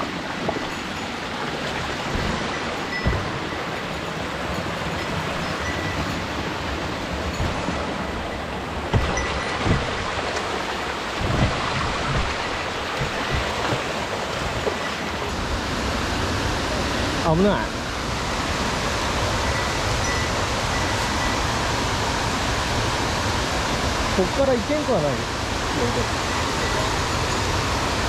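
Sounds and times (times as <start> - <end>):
stream water rushing: 0.0 - 28.0
dull knocks: 1.7 - 6.4, 7.0 - 15.2.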